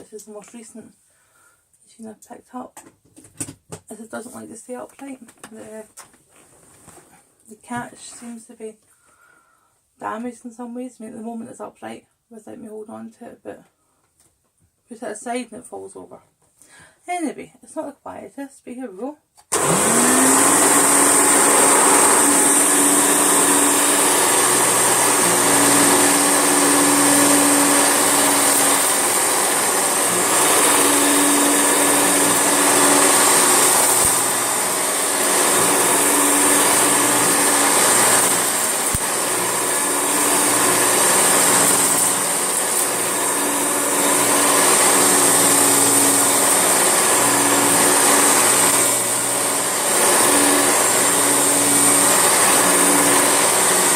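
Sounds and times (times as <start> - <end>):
upright vacuum cleaner running: 19.5 - 53.9.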